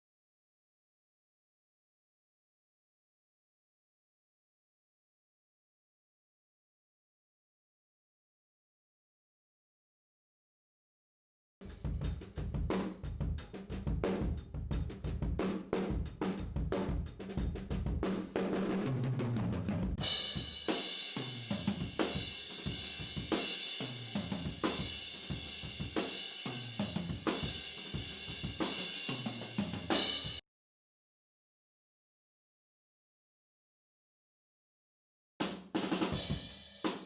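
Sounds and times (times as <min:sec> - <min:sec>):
acoustic drum kit playing: 0:11.6 - 0:30.4, 0:35.6 - 0:37.0.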